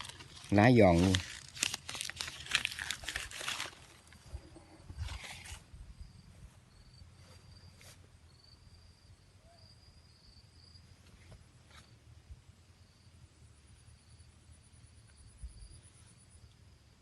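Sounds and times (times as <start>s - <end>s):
dry leaves rustling: 0.0s - 5.7s
high insect trill: 0.0s - 11.0s, 12.6s - 17.0s.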